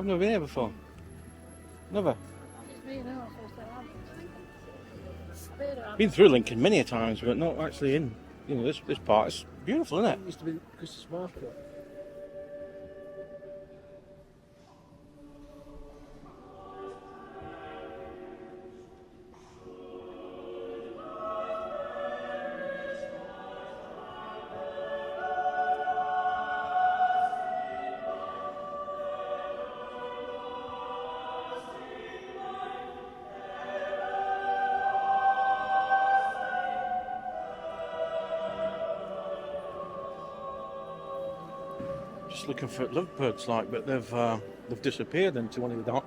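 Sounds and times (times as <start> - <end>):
choir singing long notes: 11.5 - 46.0.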